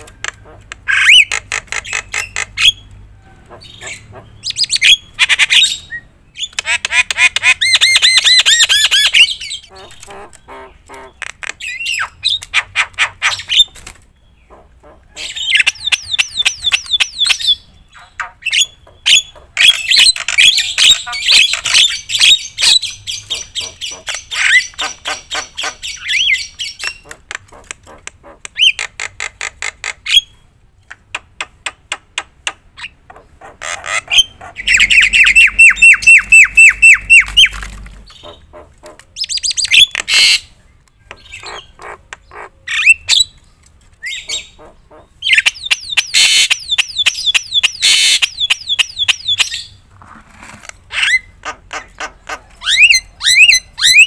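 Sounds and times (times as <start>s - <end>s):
myna bird singing: 0.0s - 49.9s, 50.8s - 54.0s
bird fast trill: 33.6s - 38.5s.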